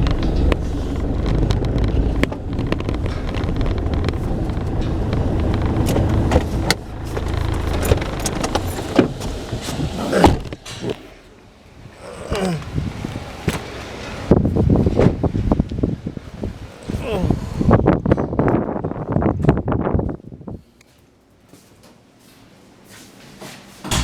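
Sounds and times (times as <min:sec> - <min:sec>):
clicks and knocks: 0:00.0 - 0:09.2
low motor rumble: 0:00.0 - 0:20.5.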